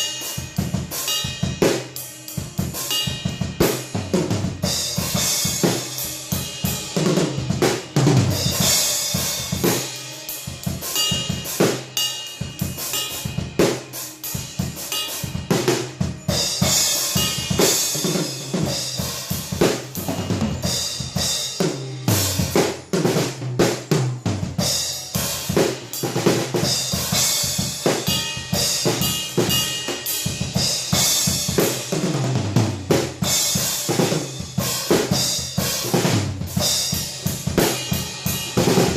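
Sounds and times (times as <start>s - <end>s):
drum kit groove: 0.0s - 38.9s
cymbal crashes: 4.6s - 22.9s.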